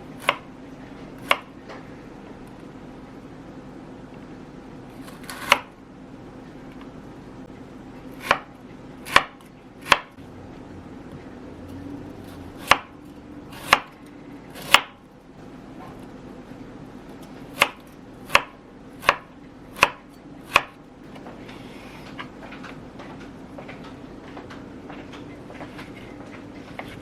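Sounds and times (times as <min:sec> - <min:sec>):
knife chopping on cutting board: 0:01.2 - 0:01.5, 0:05.1 - 0:05.7, 0:08.2 - 0:10.2, 0:12.4 - 0:12.9, 0:13.5 - 0:14.0, 0:14.6 - 0:15.0, 0:17.5 - 0:20.8.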